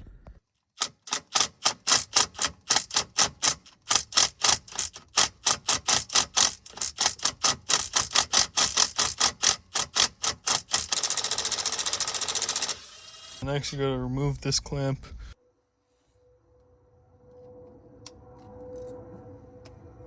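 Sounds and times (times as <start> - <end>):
wrench clicking: 0.8 - 13.0.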